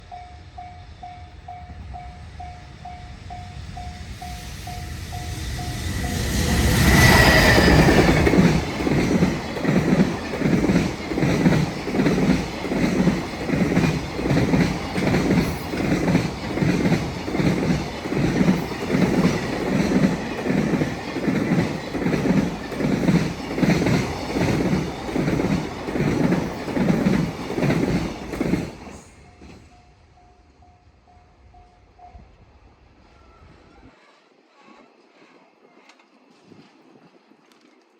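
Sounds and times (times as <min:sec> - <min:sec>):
electric locomotive passing: 0:00.0 - 0:36.3
wheels clacking over rail joints: 0:05.7 - 0:29.6.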